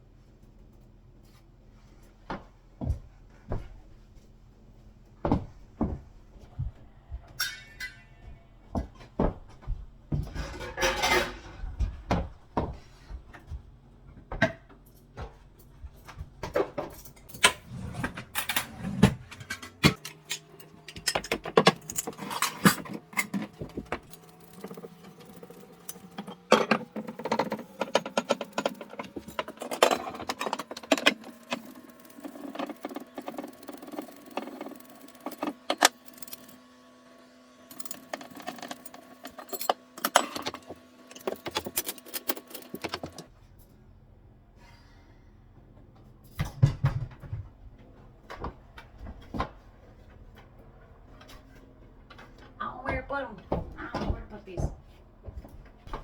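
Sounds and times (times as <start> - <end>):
dishes clinking: 7.4 - 8.2, 10.4 - 11.6.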